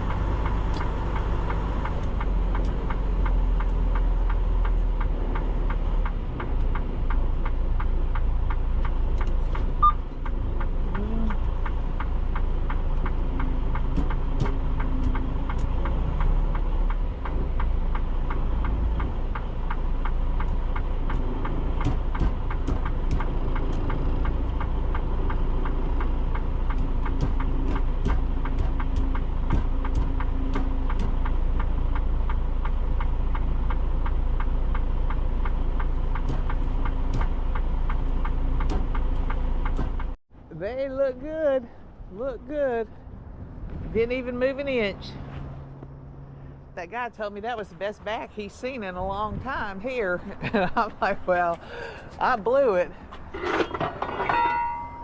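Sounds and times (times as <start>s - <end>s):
diesel truck engine rumbling: 0.0s - 55.0s.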